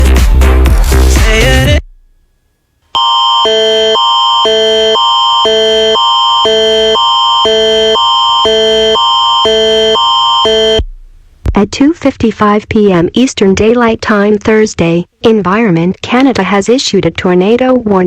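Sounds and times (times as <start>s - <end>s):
electronic music: 0.0s - 1.8s, 3.4s - 11.4s
alternating electronic alert tones: 3.0s - 10.9s.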